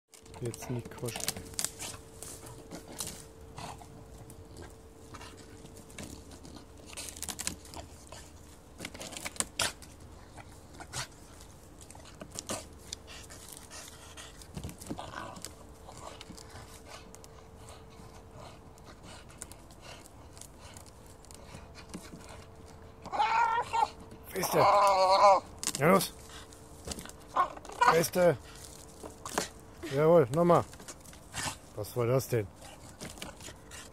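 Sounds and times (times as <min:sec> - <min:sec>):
dog chewing wood cracks: 0:00.1 - 0:33.9
dog panting: 0:00.4 - 0:24.6, 0:26.0 - 0:33.9.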